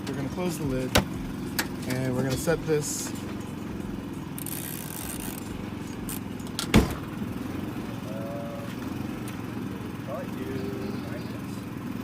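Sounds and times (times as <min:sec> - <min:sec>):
generator engine running: 0:00.0 - 0:12.0
sharp thump: 0:06.7 - 0:07.1.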